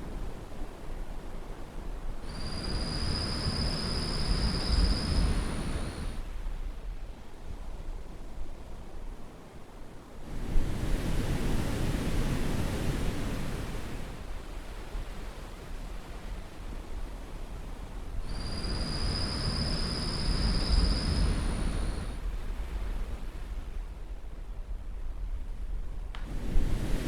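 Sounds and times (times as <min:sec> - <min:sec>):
surf washing on shore: 0:26.2 - 0:27.0.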